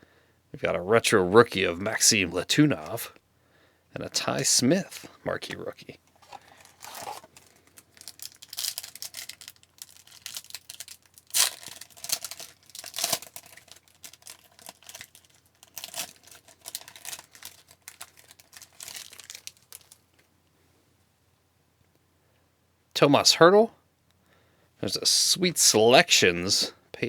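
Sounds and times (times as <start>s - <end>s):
cards sliding together: 6.2s - 7.4s
card pack wrapper tearing: 6.2s - 20.1s.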